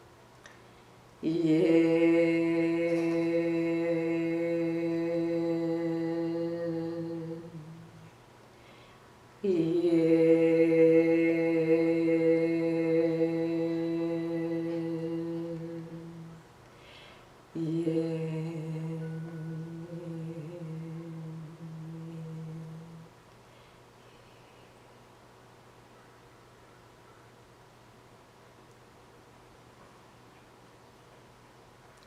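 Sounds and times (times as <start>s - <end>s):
woman chanting held tones: 1.2s - 8.1s, 9.4s - 16.5s, 17.6s - 23.2s
breath: 8.5s - 9.2s, 16.7s - 17.4s, 23.4s - 24.7s.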